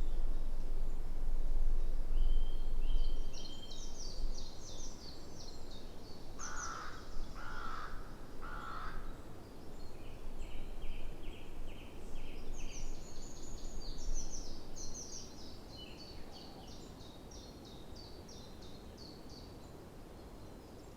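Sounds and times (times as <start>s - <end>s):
low background rumble: 0.0s - 6.2s
songbirds singing: 0.0s - 20.9s
crow cawing: 6.4s - 9.1s.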